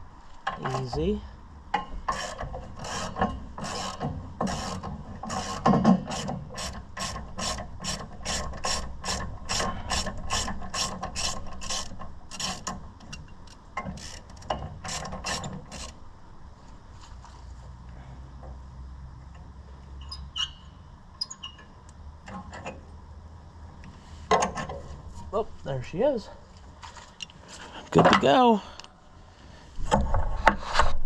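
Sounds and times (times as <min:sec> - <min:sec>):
ratchet wrench clicking: 0:02.1 - 0:16.0.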